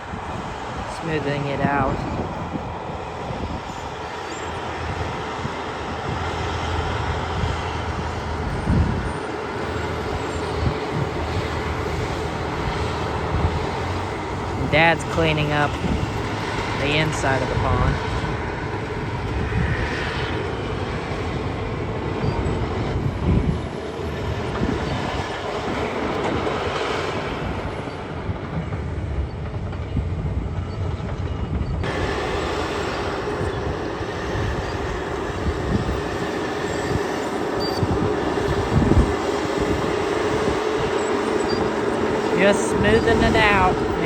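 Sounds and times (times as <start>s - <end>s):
diesel engine under load: 0.0s - 44.0s.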